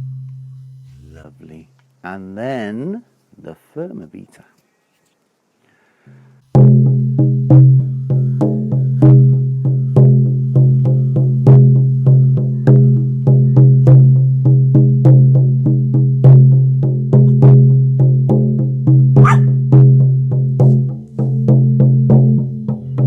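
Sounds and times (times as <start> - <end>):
frame drum booming beats: 6.6 - 23.0.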